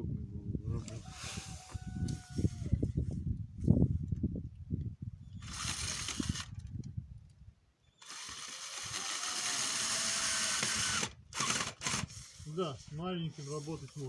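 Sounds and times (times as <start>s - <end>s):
cordless drill driving a screw: 5.4s - 6.5s, 8.0s - 12.4s.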